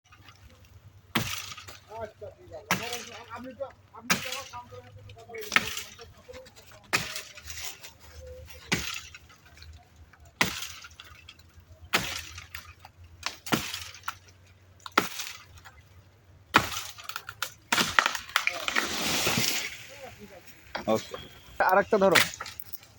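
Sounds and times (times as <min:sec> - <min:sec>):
sharp chopping strikes: 0:01.1 - 0:01.8, 0:02.7 - 0:03.2, 0:04.0 - 0:04.6, 0:06.9 - 0:07.4, 0:08.7 - 0:09.2, 0:10.4 - 0:11.0, 0:11.9 - 0:14.2, 0:14.9 - 0:15.5, 0:16.5 - 0:19.6, 0:22.1 - 0:22.6.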